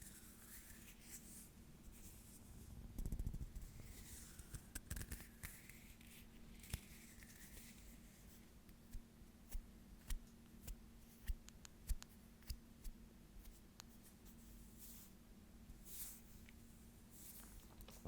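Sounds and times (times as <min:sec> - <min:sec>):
hands rubbing softly: 0:03.6 - 0:18.0
finger clicks and taps: 0:11.2 - 0:12.6.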